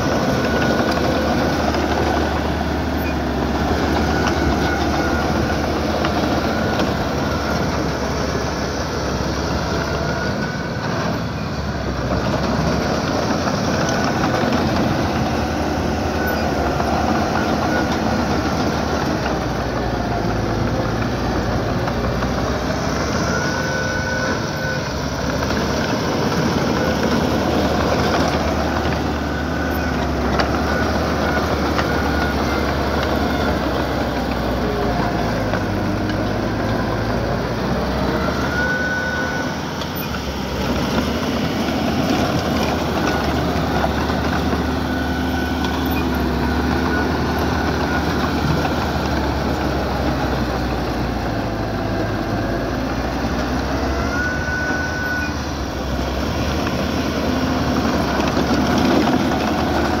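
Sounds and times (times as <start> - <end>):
heavy equipment engine clattering: 0.0 - 60.0
high squeals: 13.6 - 51.0, 53.1 - 60.0.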